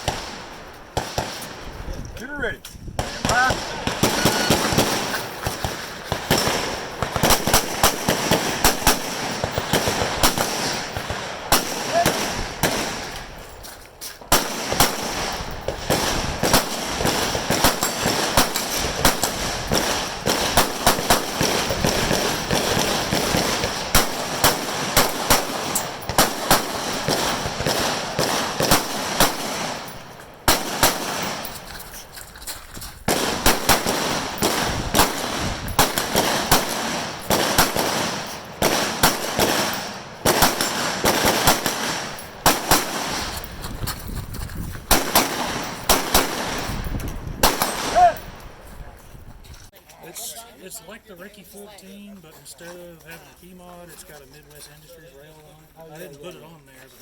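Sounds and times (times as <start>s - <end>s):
rifle shots: 0.0s - 1.8s, 3.0s - 13.4s, 14.3s - 32.1s, 33.1s - 43.7s, 44.8s - 48.6s.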